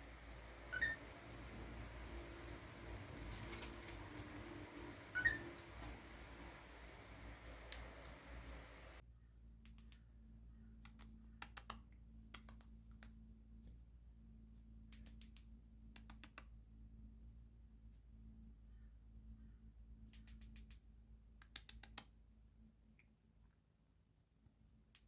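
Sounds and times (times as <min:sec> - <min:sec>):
faint small clicks and taps: 0:09.6 - 0:10.1, 0:10.8 - 0:13.8, 0:14.8 - 0:16.6, 0:20.0 - 0:22.2.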